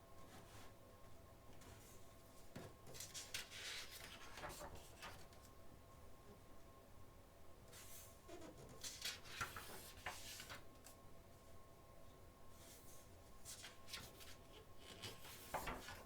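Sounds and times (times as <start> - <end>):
magazine pages rustling: 13.5 - 16.0.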